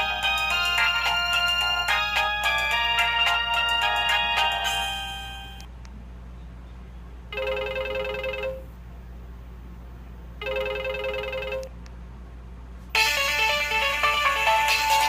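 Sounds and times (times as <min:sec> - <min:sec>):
electronic phone ringing: 0:00.0 - 0:05.7, 0:07.4 - 0:08.6, 0:10.4 - 0:11.7
melodic phone ringtone: 0:00.0 - 0:05.7, 0:07.4 - 0:08.6, 0:10.4 - 0:11.6, 0:13.0 - 0:15.0.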